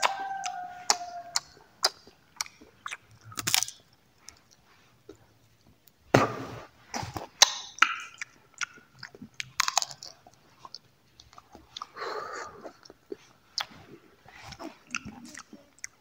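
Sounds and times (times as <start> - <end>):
wet mouth clicks: 0.0 - 5.2
chewing and crunching dry fruit: 0.0 - 5.8, 7.2 - 16.0.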